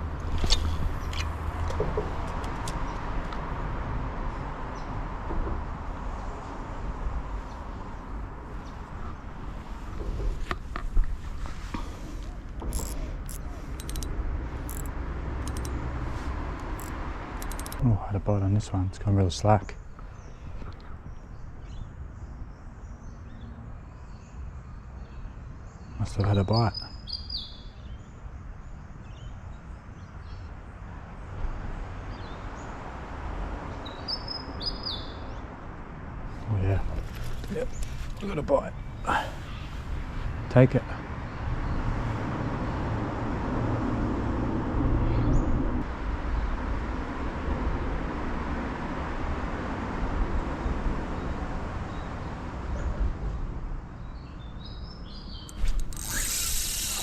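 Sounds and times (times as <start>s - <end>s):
outdoor rumble and hiss: 0.0s - 21.7s, 35.6s - 54.0s, 55.1s - 57.0s.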